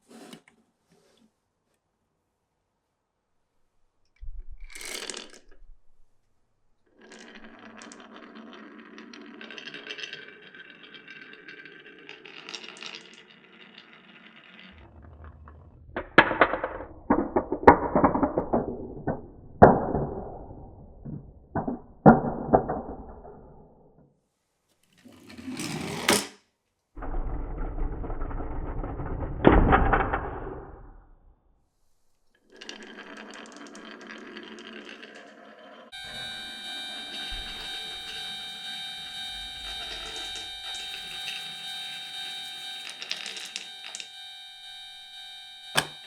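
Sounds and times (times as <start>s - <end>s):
marbles clacking on wood: 4.2s - 5.8s, 6.9s - 23.6s, 32.4s - 35.9s
marble rolling on wooden track: 4.2s - 23.9s, 25.0s - 26.3s, 27.0s - 31.2s, 32.0s - 38.2s, 42.7s - 44.2s.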